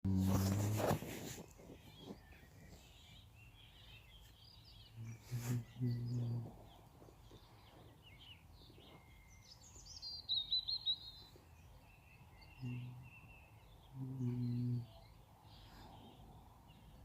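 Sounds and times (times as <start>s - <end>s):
faint outdoor background: 0.0s - 17.0s
short low hums: 0.1s - 1.4s, 5.0s - 6.6s, 14.0s - 14.9s
birds chirping and singing: 0.1s - 17.0s.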